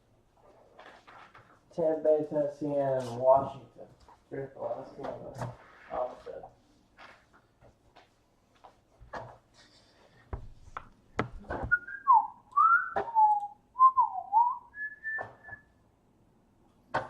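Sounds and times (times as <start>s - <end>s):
person whistling a tune: 11.6s - 15.7s.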